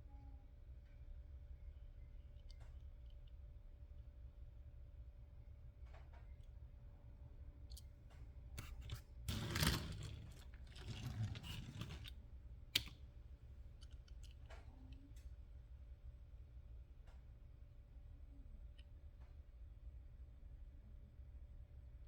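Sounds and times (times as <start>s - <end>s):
rustling and scraping: 8.6s - 12.2s
toy cars clicking: 8.6s - 12.2s, 12.8s - 13.0s.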